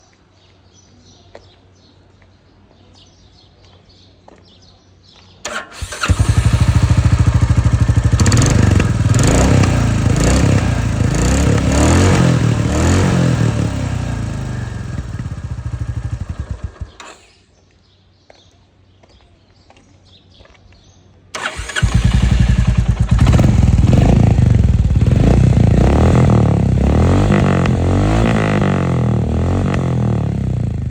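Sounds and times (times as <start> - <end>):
motorcycle engine revving: 5.5 - 17.3, 21.4 - 30.9.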